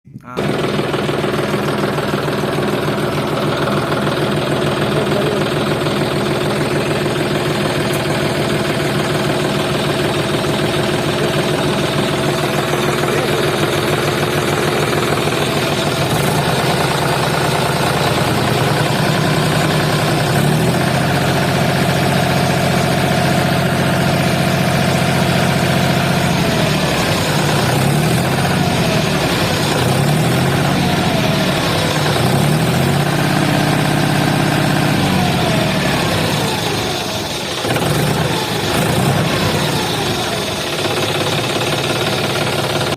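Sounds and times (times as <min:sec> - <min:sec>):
engine running: 0:00.0 - 0:42.9.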